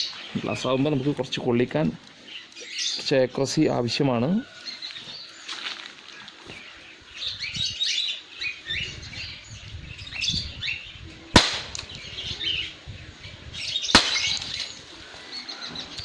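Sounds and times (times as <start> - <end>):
birds chirping: 0.0 - 16.0
air pistol shots: 11.4 - 12.0, 14.0 - 14.7.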